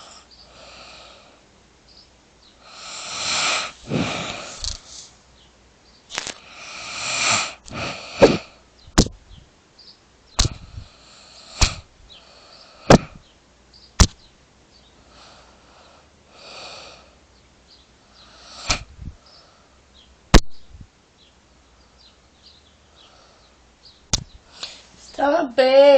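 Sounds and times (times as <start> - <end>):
woman snoring: 2.7 - 4.8, 6.5 - 8.5
sharp loud clicks: 7.6 - 9.2, 10.4 - 10.7, 11.6 - 11.9, 14.0 - 14.2, 18.6 - 18.9.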